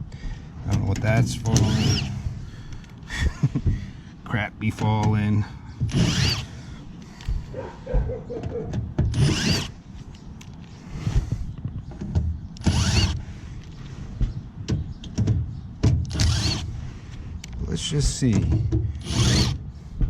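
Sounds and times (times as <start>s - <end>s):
power drill whirring: 1.4s - 2.9s, 5.9s - 7.5s, 9.1s - 9.8s, 12.6s - 13.4s, 16.1s - 16.8s, 19.0s - 19.7s.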